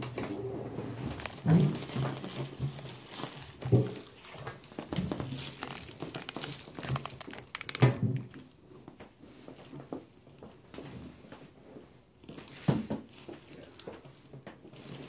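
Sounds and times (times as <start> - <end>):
paper crinkling: 1.0 - 8.6.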